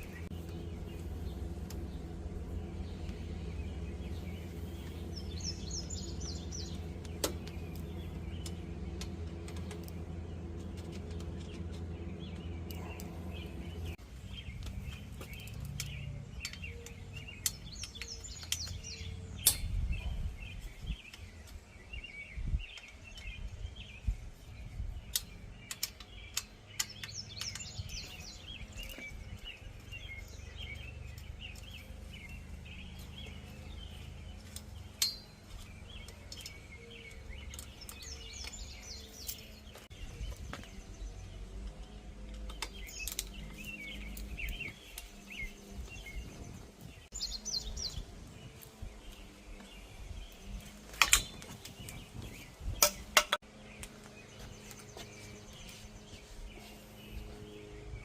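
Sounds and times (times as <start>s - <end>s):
birds chirping and singing: 0.0s - 58.0s
steady low hum: 0.0s - 58.0s.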